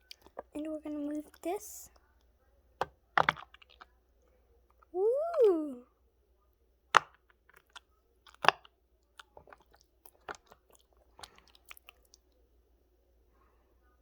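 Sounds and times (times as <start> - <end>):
fidget bubbles popping through slime: 2.8 - 3.9, 7.0 - 12.1.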